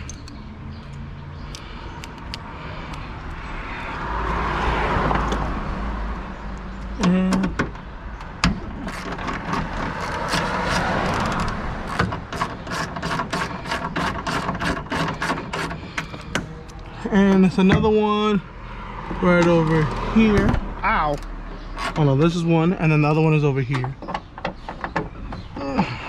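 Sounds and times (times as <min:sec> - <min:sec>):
rustling and scraping in car trunk: 0:08.5 - 0:17.7.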